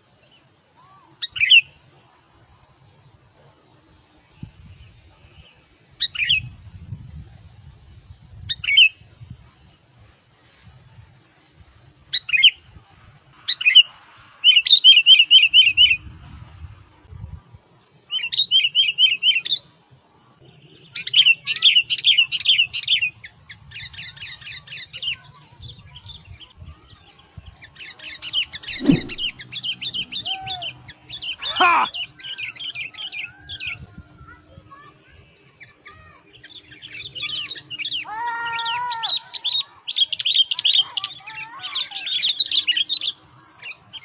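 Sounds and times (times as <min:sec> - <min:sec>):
songbirds trilling: 0:27.1 - 0:33.8.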